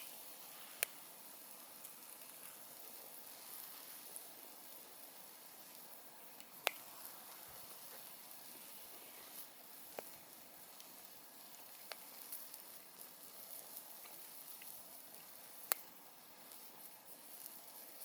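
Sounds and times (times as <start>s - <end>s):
campfire hiss: 0.0s - 18.0s
fire crackles and pops: 0.0s - 18.0s.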